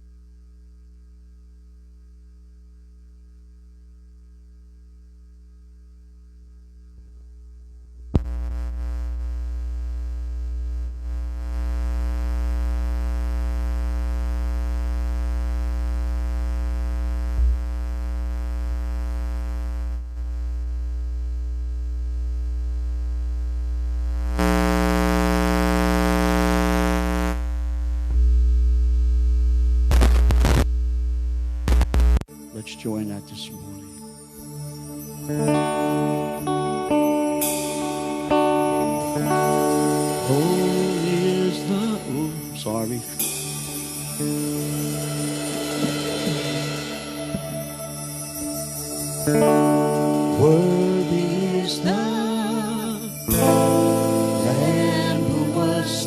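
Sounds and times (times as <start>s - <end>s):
electrical mains hum: 0.0s - 32.3s
loud drone of held tones: 8.1s - 32.2s, 33.5s - 56.0s.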